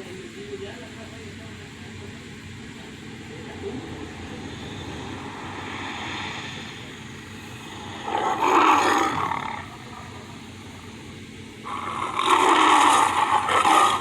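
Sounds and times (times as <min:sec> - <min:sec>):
lion growling and roaring: 0:07.6 - 0:11.0, 0:11.6 - 0:14.0.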